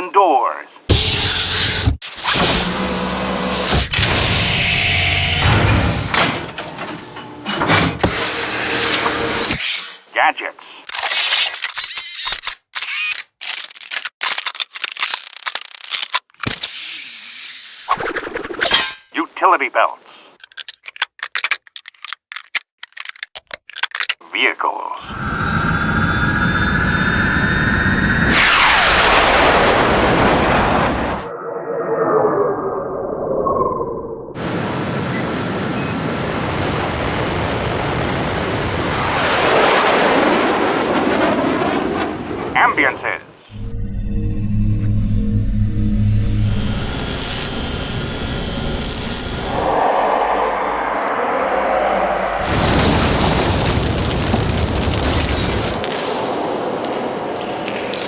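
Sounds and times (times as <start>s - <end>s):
mechanical clicks and ratchets: 10.9s - 16.6s, 20.4s - 24.2s
aircraft engine rushing whine: 25.0s - 31.3s, 34.4s - 42.6s, 43.6s - 52.4s
warbling electronic whir: 43.6s - 51.0s.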